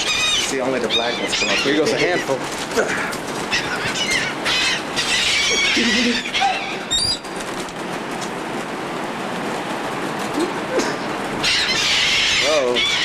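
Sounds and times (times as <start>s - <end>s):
gulls squawking: 0.0s - 7.6s, 11.0s - 13.0s
steady rushing hiss: 0.0s - 13.0s
wings flapping: 0.0s - 13.0s.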